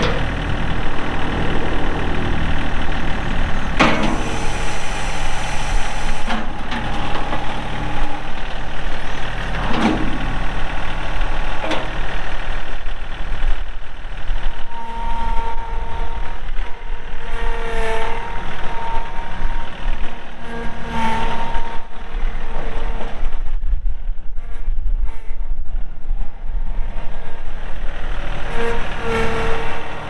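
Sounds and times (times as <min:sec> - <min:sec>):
sharp clunks from loader: 0:00.0 - 0:13.4
tractor diesel engine running: 0:00.0 - 0:23.4, 0:27.4 - 0:30.0
hydraulic whine: 0:00.0 - 0:23.6, 0:27.4 - 0:30.0.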